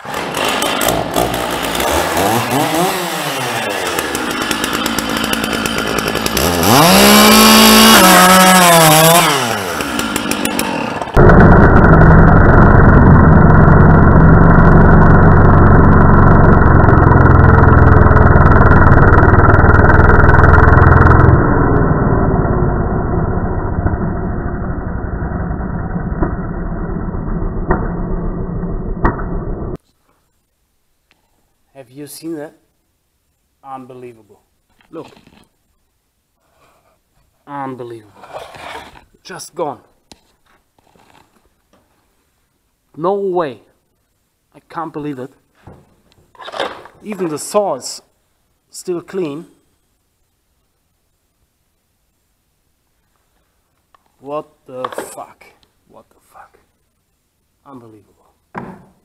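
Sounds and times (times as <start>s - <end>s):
chainsaw revving: 0.0s - 24.3s.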